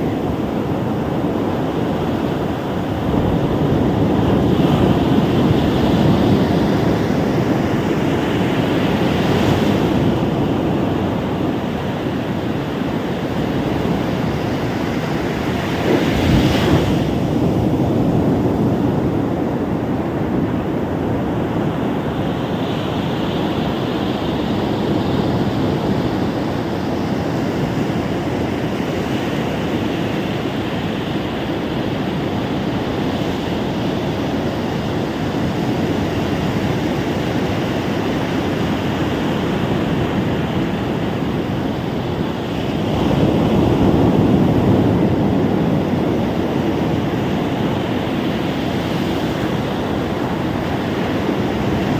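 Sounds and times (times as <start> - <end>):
ocean surf breaking on shore: 0.0 - 51.9
wind buffeting microphone: 0.0 - 51.9.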